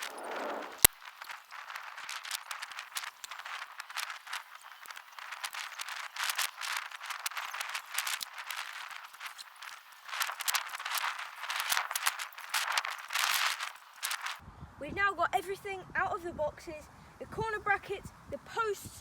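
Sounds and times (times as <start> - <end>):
plastic bags crinkling: 0.0 - 14.4.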